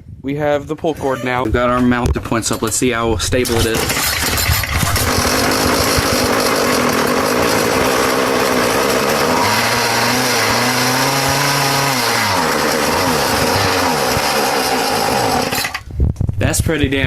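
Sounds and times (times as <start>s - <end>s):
small two-stroke engine running: 3.4s - 15.9s.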